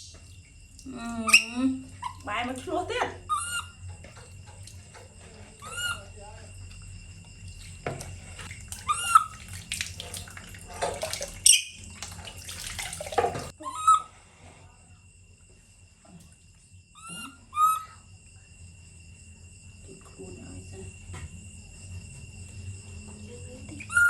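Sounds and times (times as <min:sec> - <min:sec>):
bath water splashing: 0:00.0 - 0:13.6
insects trilling: 0:00.0 - 0:24.0.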